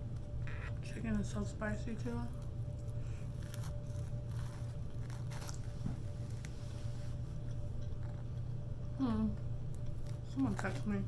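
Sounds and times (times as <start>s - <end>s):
steady low hum: 0.0s - 11.0s
person chewing and crunching: 2.4s - 6.5s.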